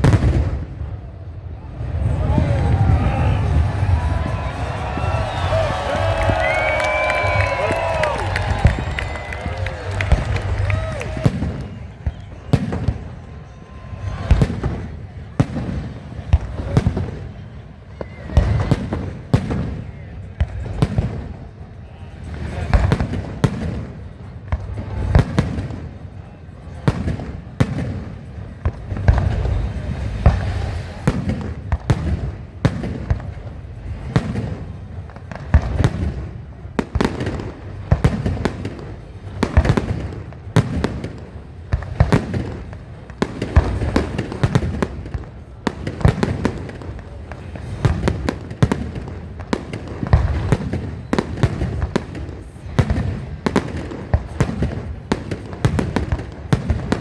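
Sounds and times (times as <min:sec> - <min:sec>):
fireworks bangs: 0:00.0 - 0:57.0
low rolling rumble: 0:01.6 - 0:17.6, 0:28.4 - 0:32.5.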